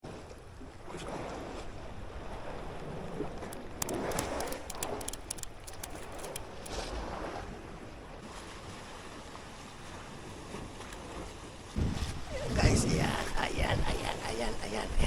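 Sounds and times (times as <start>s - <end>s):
water sloshing: 0.9s - 10.0s
light sharp clicks: 3.4s - 6.8s
wind rumbling on microphone: 9.0s - 15.0s.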